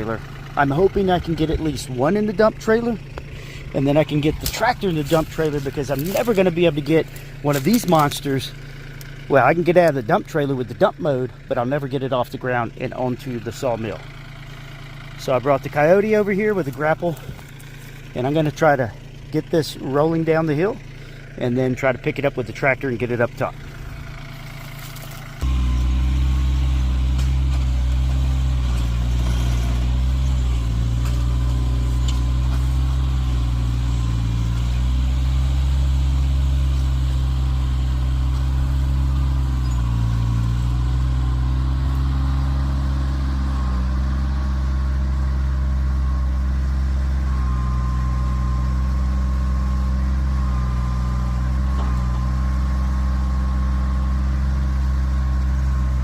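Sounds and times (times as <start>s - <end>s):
tractor diesel engine running: 0.0s - 56.0s.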